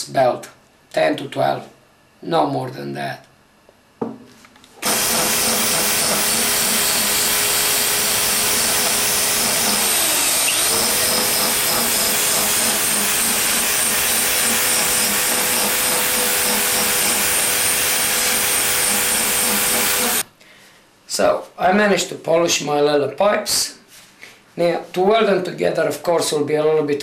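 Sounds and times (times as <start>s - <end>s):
belt sander polishing metal pipe: 4.8s - 20.2s.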